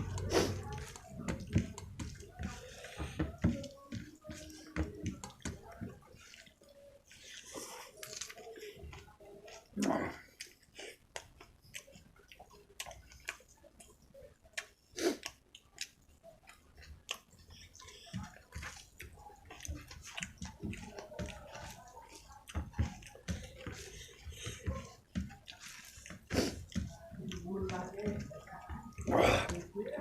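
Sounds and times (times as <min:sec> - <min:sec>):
wet chewing: 0:00.0 - 0:30.0
lip smacks: 0:05.2 - 0:27.4.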